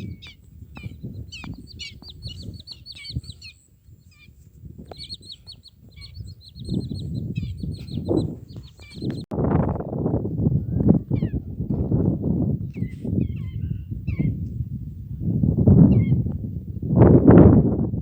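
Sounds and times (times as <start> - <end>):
birds chattering calls: 0.0 - 9.3, 12.6 - 14.5, 15.8 - 16.2.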